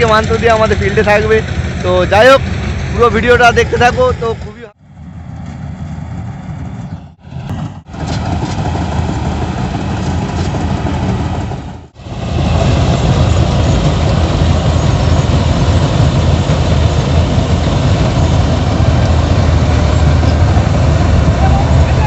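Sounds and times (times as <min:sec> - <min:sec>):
tractor diesel engine running: 0:00.0 - 0:22.0.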